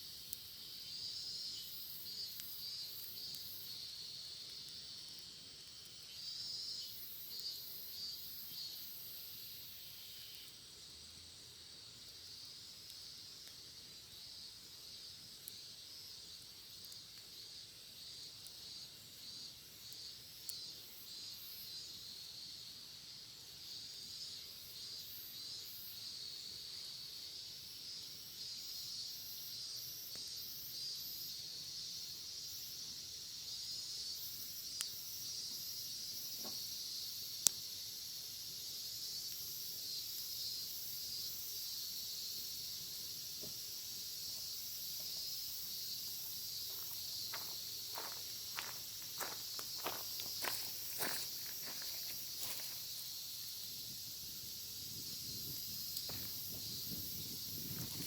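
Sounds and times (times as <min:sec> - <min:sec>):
cicadas singing: 0:00.0 - 0:58.0
wood fire popping: 0:02.0 - 0:06.4, 0:10.3 - 0:19.0, 0:34.7 - 0:38.2, 0:53.6 - 0:58.0.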